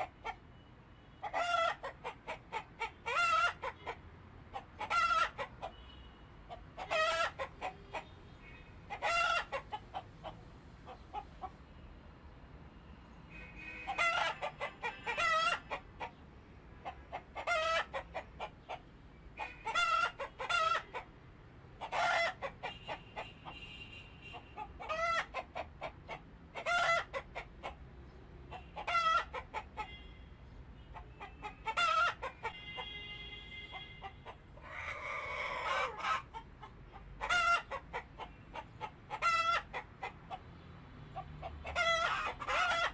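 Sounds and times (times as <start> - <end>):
chickens calling: 1.2 - 5.8, 6.5 - 8.2, 8.9 - 11.6, 13.7 - 16.2, 16.8 - 21.1, 21.8 - 23.6, 24.3 - 27.8, 28.5 - 30.0, 30.9 - 32.9, 33.7 - 42.9.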